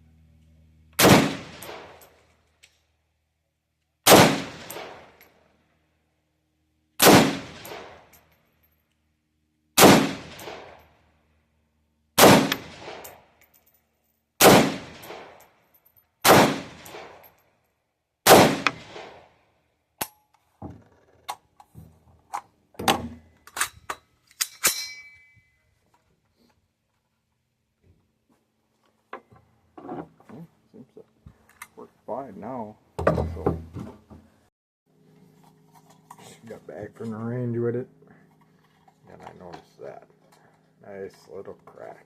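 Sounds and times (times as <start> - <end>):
rifle shots with echo: 1.0 - 2.1, 4.1 - 5.2, 7.0 - 8.1, 9.8 - 10.9, 12.2 - 13.2, 14.4 - 15.4, 16.2 - 17.2, 18.2 - 19.3
metallic clicks and clanks: 22.3 - 26.0.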